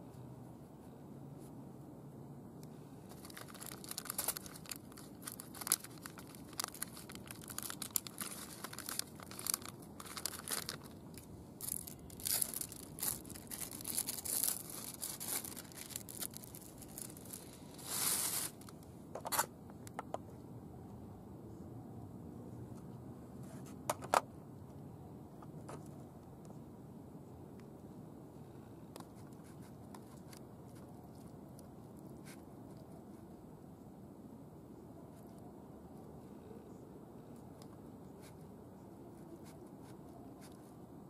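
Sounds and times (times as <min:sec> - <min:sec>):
packaging crinkling and tearing: 0:03.1 - 0:19.5.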